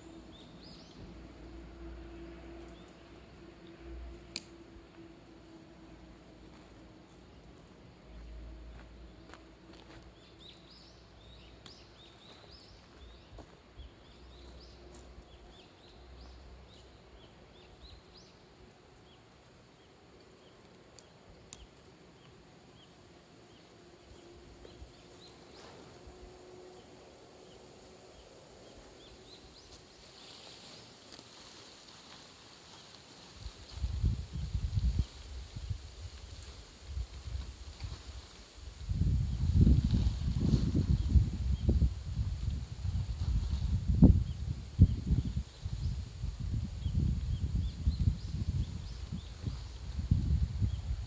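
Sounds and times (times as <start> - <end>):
small birds chirping: 10.1 - 25.7
soft hiss: 19.0 - 51.0.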